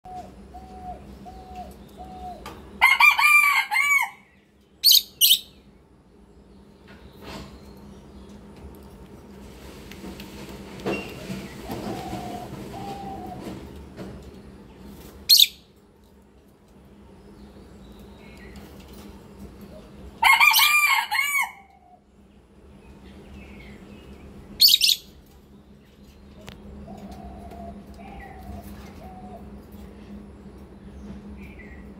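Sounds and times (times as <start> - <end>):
rooster crowing: 2.8 - 4.3, 20.2 - 22.0.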